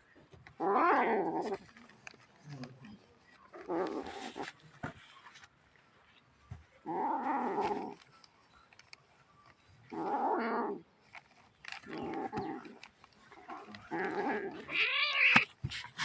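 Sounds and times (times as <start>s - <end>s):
cat growling: 0.6s - 1.8s, 3.5s - 4.6s, 6.8s - 8.1s, 9.9s - 10.9s, 11.8s - 15.5s
cat yowling: 14.0s - 15.4s.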